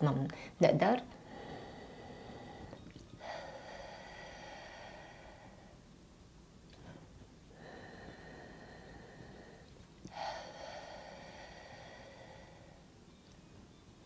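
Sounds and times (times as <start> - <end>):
woman breathing out hard: 6.8 - 12.9.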